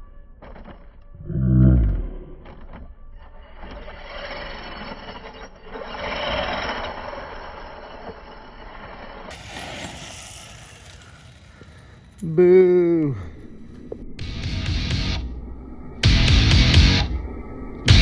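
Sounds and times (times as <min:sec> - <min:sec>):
tyre noise on dirt: 0:01.9 - 0:12.2.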